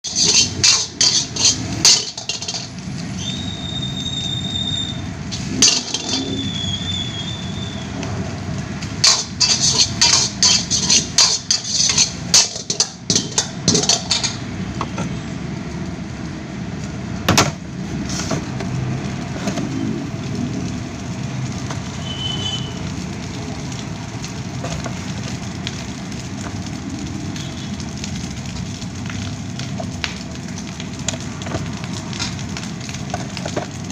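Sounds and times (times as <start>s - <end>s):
metal spatula scraping a wok: 0.0s - 3.3s, 5.3s - 6.9s, 8.9s - 15.0s.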